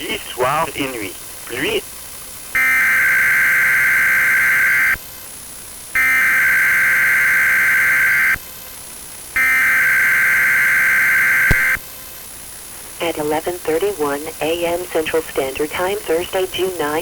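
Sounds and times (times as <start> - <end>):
radio hiss: 0.0 - 17.0
two-tone data bursts: 2.5 - 5.1, 5.9 - 8.4, 9.3 - 11.9.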